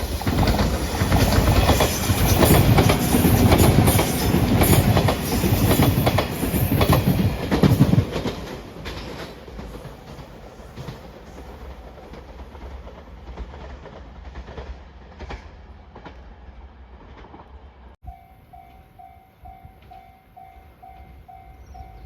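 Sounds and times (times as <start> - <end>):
train wheels clicking over rail joints: 0.0 - 17.6
level-crossing warning bell ringing: 18.0 - 22.0.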